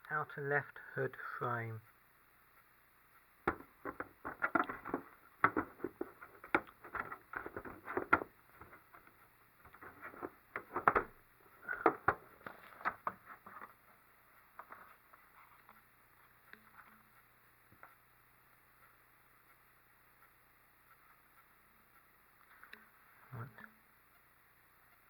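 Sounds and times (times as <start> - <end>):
plastic parts and packaging rustling: 3.5 - 15.7.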